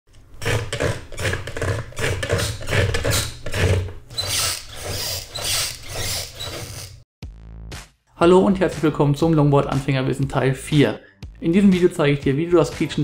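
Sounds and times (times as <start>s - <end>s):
longboard trucks squeaking: 0.5s - 7.0s.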